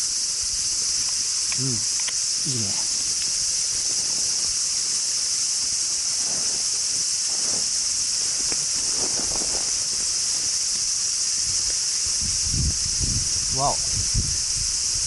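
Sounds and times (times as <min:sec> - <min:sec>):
insects chorus: 0:00.0 - 0:15.0
faint crackles: 0:05.7 - 0:11.0.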